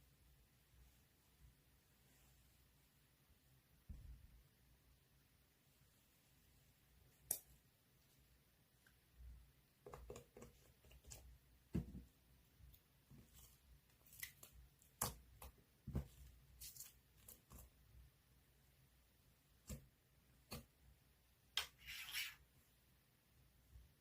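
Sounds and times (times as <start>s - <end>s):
faint irregular clicks and taps: 9.8s - 13.5s.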